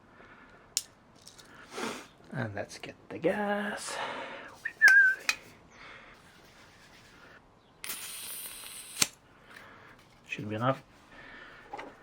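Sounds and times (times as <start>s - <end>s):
gas hissing: 7.8s - 9.2s.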